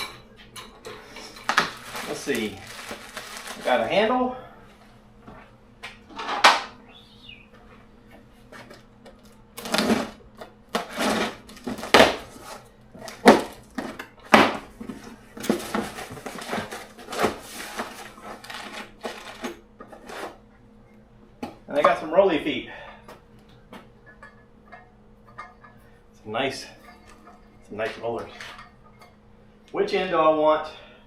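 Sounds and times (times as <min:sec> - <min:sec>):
packaging rustling: 0:01.5 - 0:04.0, 0:15.4 - 0:20.3
parts clinking and knocking: 0:24.0 - 0:25.8.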